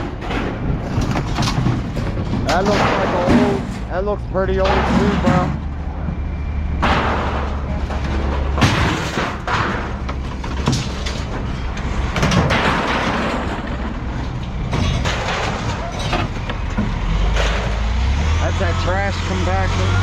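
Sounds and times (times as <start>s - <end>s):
scrap metal crashing onto pile: 0.0s - 5.6s, 6.8s - 19.6s
metal rattling clatter: 0.0s - 5.7s, 6.8s - 17.8s.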